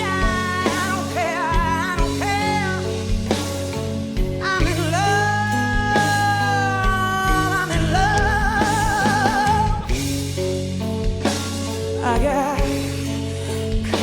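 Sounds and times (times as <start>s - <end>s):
woman singing with vibrato: 0.0s - 3.4s, 4.4s - 10.2s, 12.0s - 14.0s
blues-rock band bass and guitar: 0.0s - 14.0s.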